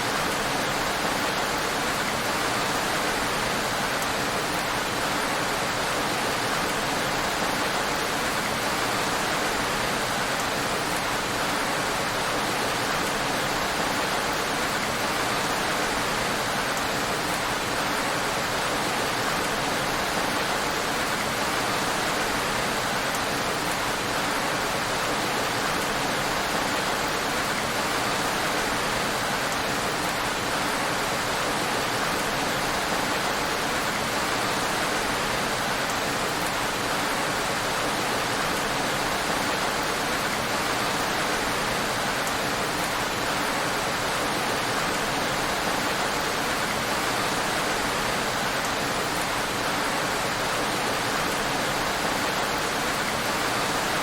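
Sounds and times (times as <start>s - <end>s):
heavy rain on a road: 0.0s - 54.0s.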